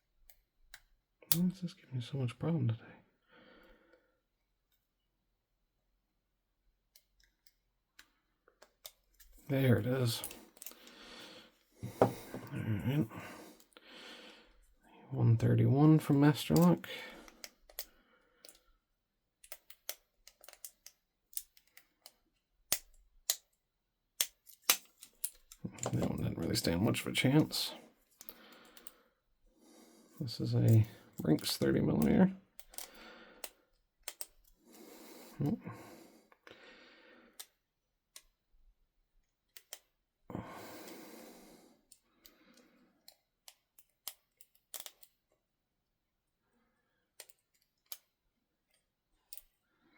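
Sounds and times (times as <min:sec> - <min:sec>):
lock pick clicking in padlock: 0:19.4 - 0:23.5, 0:24.2 - 0:26.0, 0:32.6 - 0:34.6, 0:39.5 - 0:39.9, 0:43.0 - 0:45.3.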